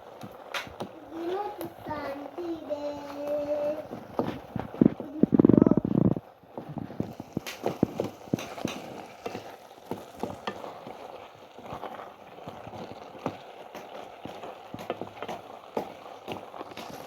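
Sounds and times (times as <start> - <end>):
faint sizzling hiss: 0.0 - 17.0
utensils knocking against a pot: 7.0 - 10.7.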